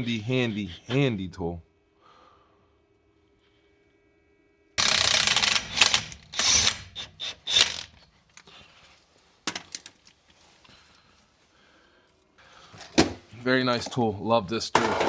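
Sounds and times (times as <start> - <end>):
mechanical ratcheting rattle: 4.8 - 8.0.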